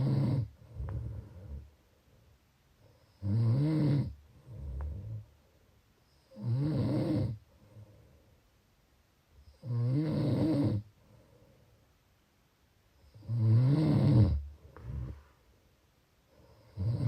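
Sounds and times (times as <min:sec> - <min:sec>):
person snoring: 0:00.0 - 0:01.6, 0:03.1 - 0:05.2, 0:06.3 - 0:07.4, 0:09.6 - 0:10.9, 0:13.1 - 0:15.2, 0:16.5 - 0:17.0
soft breath: 0:00.0 - 0:03.1, 0:07.4 - 0:08.6, 0:10.9 - 0:12.0, 0:14.4 - 0:16.8.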